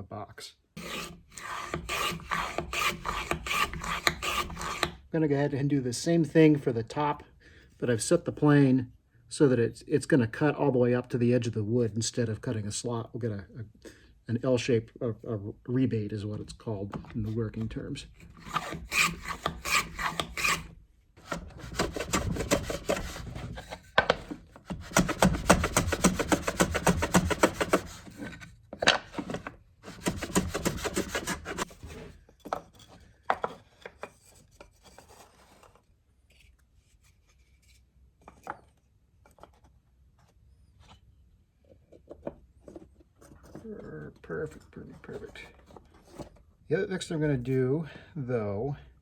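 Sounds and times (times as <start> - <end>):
plane rasping on wood: 0.8 - 5.0, 18.1 - 28.4, 29.2 - 32.1.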